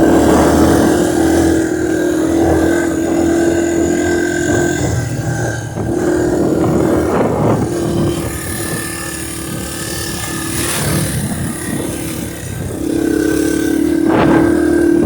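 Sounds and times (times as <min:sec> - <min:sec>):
vehicle engine steady pitch: 0:00.0 - 0:15.0
wind buffeting microphone: 0:00.0 - 0:15.0.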